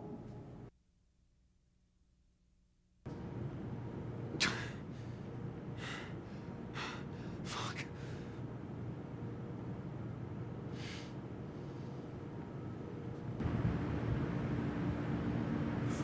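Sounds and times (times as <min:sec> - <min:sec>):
low mechanical hum: 0:00.0 - 0:00.7, 0:03.1 - 0:16.0
man gasping and breathing hard: 0:05.8 - 0:08.4.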